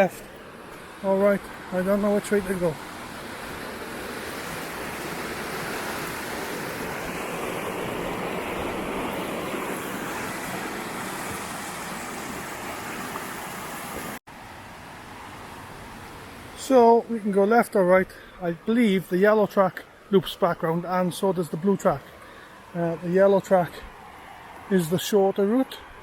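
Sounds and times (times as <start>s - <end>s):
fast-flowing stream rushing: 0.0s - 19.3s.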